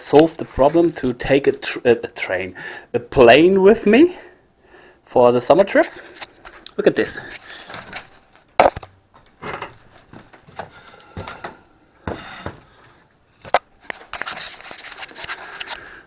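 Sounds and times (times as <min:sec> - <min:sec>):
rustles and scrapes: 0:00.1 - 0:01.7, 0:05.6 - 0:08.6, 0:12.1 - 0:16.0
sharp clicks and knocks: 0:07.8 - 0:10.7.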